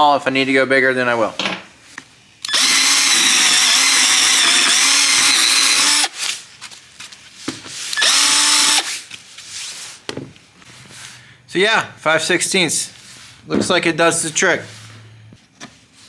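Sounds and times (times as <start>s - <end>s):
power drill boring into wood: 2.4s - 6.2s, 7.9s - 8.9s.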